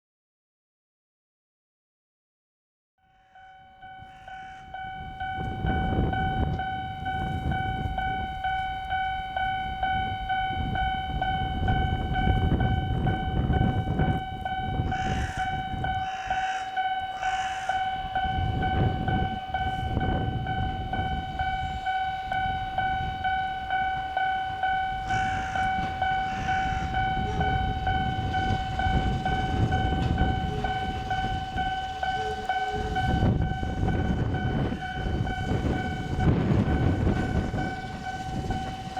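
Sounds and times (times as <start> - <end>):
electric train rumbling: 3.1 - 38.9
level crossing alarm ding: 3.4 - 38.9
high-pitched squeals: 14.8 - 38.9.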